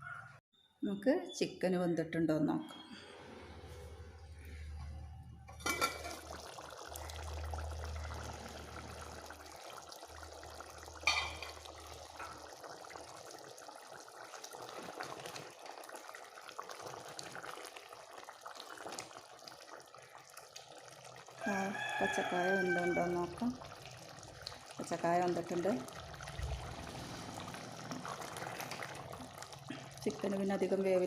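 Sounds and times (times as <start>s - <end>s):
utensil clinking on metal pot: 5.6s - 6.2s, 11.0s - 11.6s
curry bubbling in a pot: 5.6s - 31.0s.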